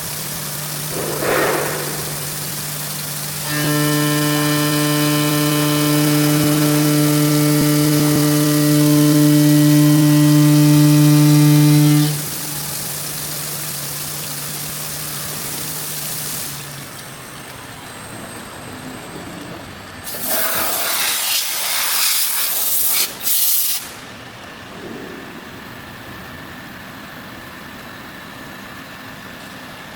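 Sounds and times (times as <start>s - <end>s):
loud hiss bursts: 0.0s - 16.9s, 20.1s - 24.1s
machine hiss: 0.0s - 16.9s, 20.1s - 27.3s
motor hum: 0.0s - 20.1s, 23.8s - 29.9s.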